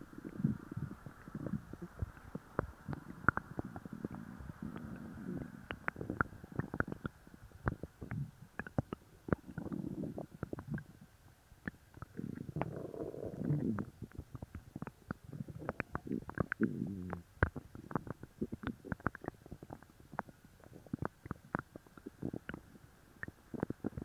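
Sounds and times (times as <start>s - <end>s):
stomach growling: 0.0s - 24.0s
gut clicks and pops: 11.6s - 22.6s.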